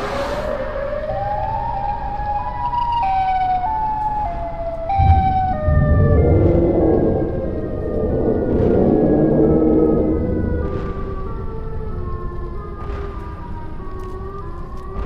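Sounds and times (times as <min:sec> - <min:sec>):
two-tone siren wailing: 0:00.5 - 0:15.0
deep rumble: 0:04.9 - 0:15.0.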